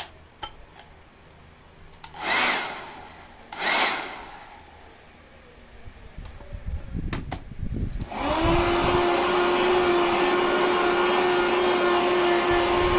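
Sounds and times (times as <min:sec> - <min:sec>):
vacuum cleaner motor whining: 0:02.2 - 0:04.9, 0:08.0 - 0:12.9.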